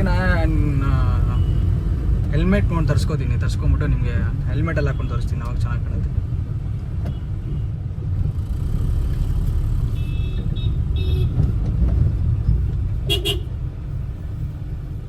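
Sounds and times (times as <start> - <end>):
car road and engine rumble: 0.0 - 15.0
car horn toots: 13.1 - 13.5.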